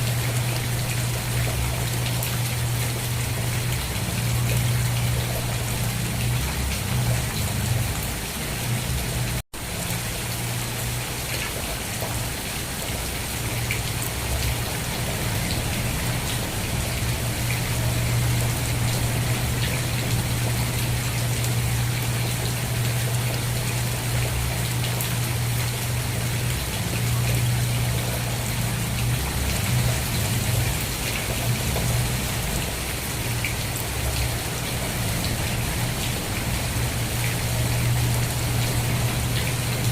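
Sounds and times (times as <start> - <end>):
steady rain falling: 0.0 - 39.9
low steady rumble: 14.2 - 32.6.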